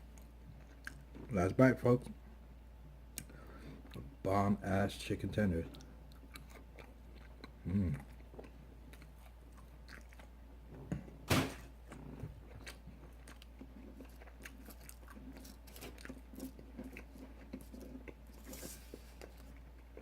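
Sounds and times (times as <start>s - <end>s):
person chewing crunchy food: 0.1s - 1.3s, 5.7s - 10.4s, 11.8s - 20.0s.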